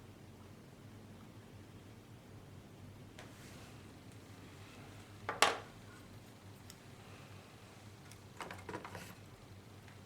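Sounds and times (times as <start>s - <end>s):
faint steady hum: 0.0s - 10.0s.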